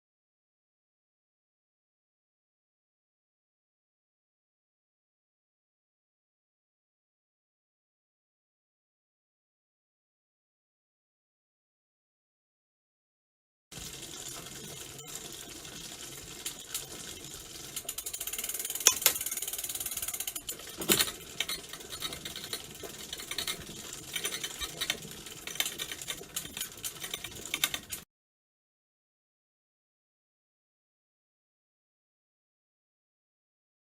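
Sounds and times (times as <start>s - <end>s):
bicycle chain rattling: 16.6s - 28.0s.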